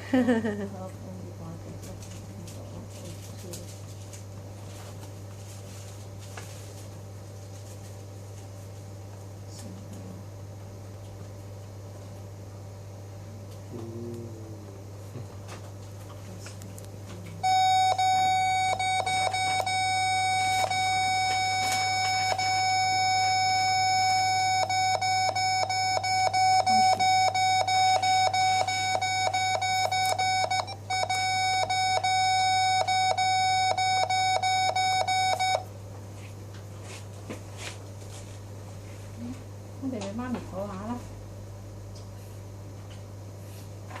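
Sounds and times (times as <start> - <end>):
electronic alarm tone: 17.4 - 35.7.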